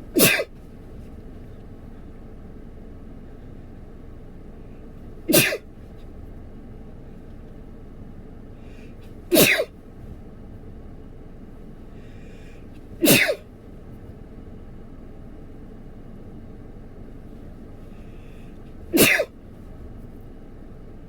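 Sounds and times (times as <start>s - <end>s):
man sneezing loudly: 0.2s - 0.5s, 5.3s - 5.6s, 9.3s - 9.7s, 13.0s - 13.4s, 19.0s - 19.3s.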